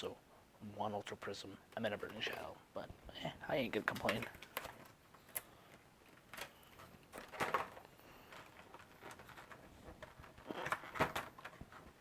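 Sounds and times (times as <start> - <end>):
packaging rustling and clicking: 3.9 - 12.0.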